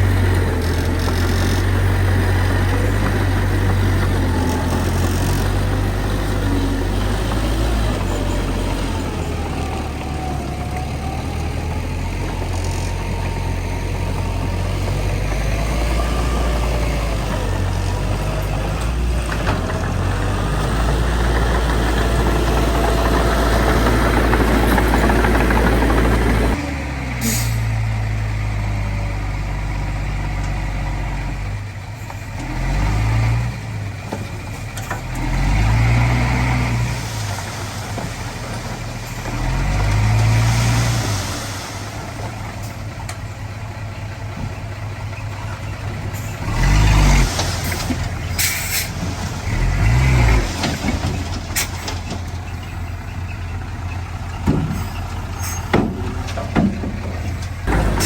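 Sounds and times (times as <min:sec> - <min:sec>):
diesel machinery revving: 0:00.0 - 0:58.0.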